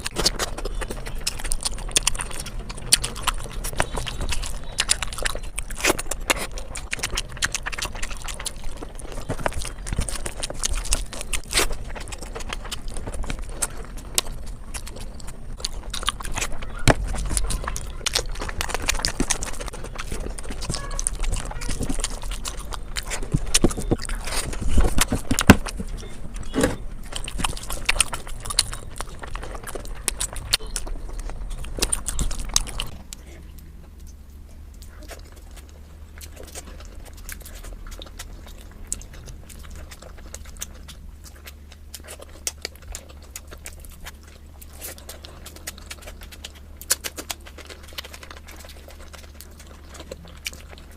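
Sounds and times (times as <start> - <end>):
chewing and crunching food: 0.0 - 50.9
steady low hum: 0.0 - 50.9.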